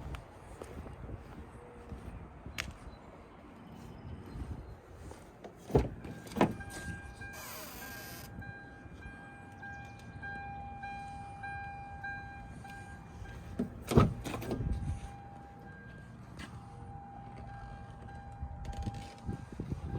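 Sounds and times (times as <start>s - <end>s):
car door thumps: 13.6s - 14.7s.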